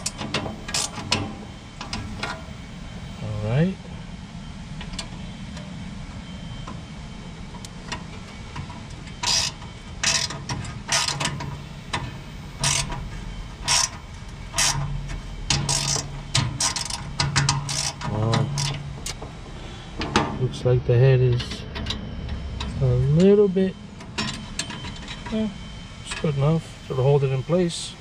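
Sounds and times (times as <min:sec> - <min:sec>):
socket ratchet ratcheting: 0:09.2 - 0:11.3, 0:12.6 - 0:13.0, 0:13.6 - 0:14.0, 0:14.6 - 0:14.8, 0:15.5 - 0:18.8.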